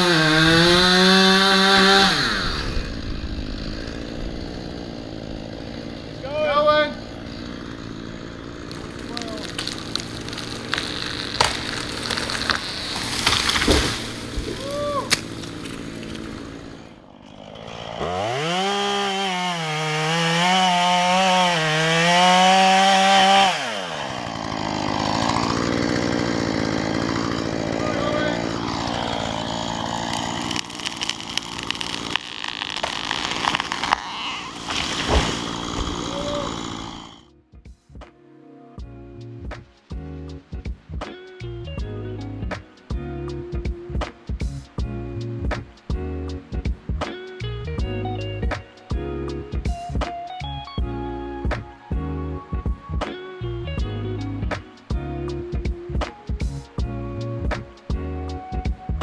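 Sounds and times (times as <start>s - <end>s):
chainsaw revving: 0.0s - 37.3s.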